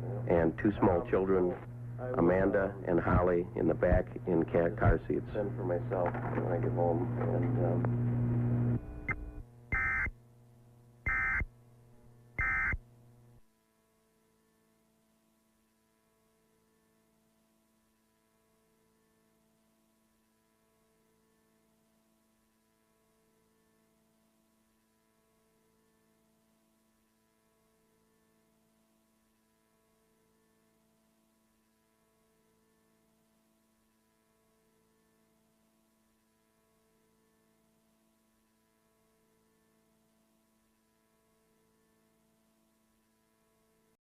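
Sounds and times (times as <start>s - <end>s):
faint steady hum: 0.0s - 13.4s
low hum: 7.9s - 10.1s, 11.1s - 11.5s, 12.4s - 12.8s
buzzing data bursts: 9.0s - 10.1s, 11.1s - 11.5s, 12.4s - 12.8s.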